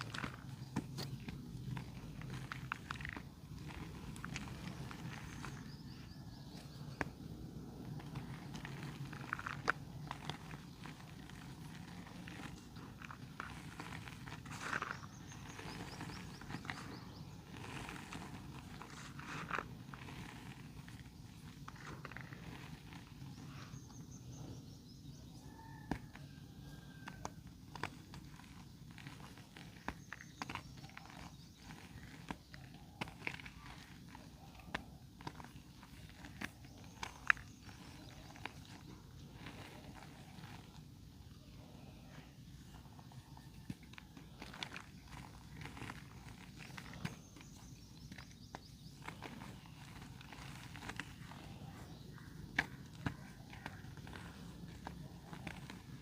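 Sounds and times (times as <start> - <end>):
sharp crackles: 0.0 - 24.6, 25.4 - 56.0
mud crumbling and crunching: 0.0 - 56.0.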